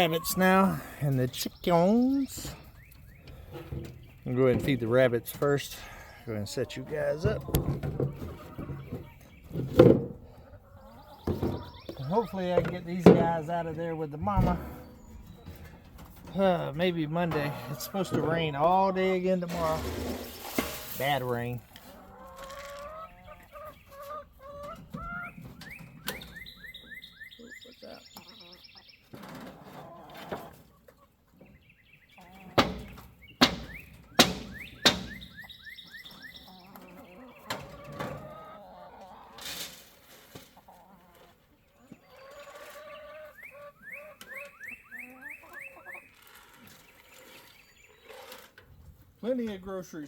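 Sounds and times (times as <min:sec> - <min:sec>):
chickens clucking: 0:00.0 - 0:50.0
sharp knocks: 0:32.6 - 0:35.2.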